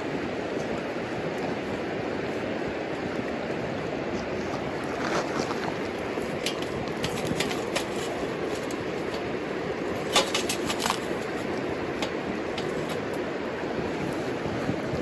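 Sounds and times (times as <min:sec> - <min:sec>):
wood fire crackling and popping: 0:05.0 - 0:13.6.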